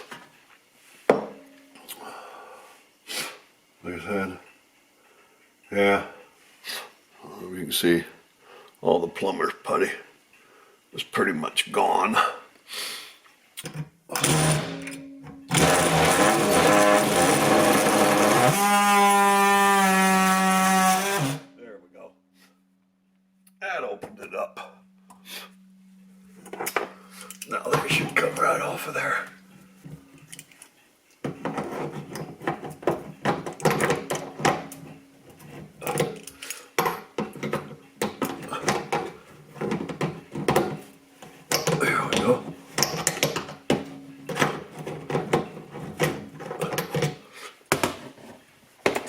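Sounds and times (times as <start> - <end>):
electric power tool motor running: 14.2 - 14.8, 15.5 - 21.4
sink drain parts scraping and rattling: 29.8 - 41.8, 42.5 - 47.2.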